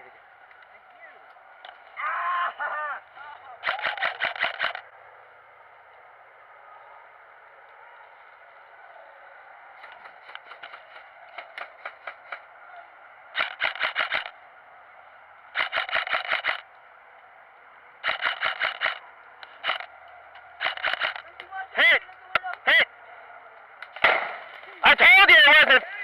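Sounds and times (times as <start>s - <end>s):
airsoft guns firing: 3.6s - 4.8s, 13.4s - 14.4s, 15.6s - 16.6s, 18.0s - 19.9s, 20.6s - 21.3s, 23.9s - 24.7s.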